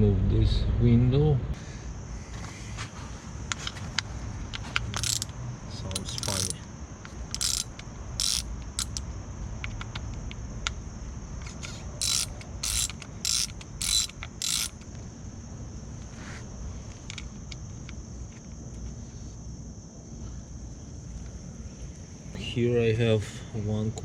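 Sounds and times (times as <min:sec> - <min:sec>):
steady high-pitched hum: 0:00.0 - 0:24.0
ratchet wrench clicking: 0:04.8 - 0:09.0, 0:11.4 - 0:14.8
small metal clicks: 0:04.8 - 0:10.8, 0:11.4 - 0:14.9.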